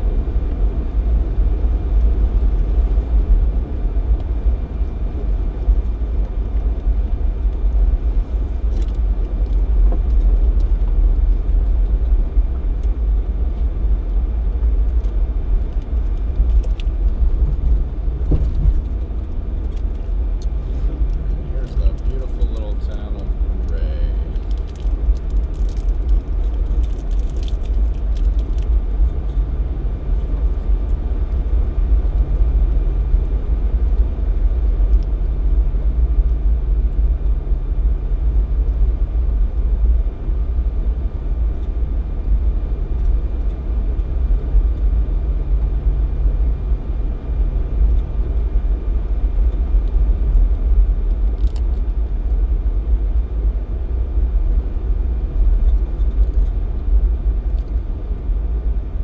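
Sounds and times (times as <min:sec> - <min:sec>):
engine and road rumble: 0:00.0 - 0:59.0.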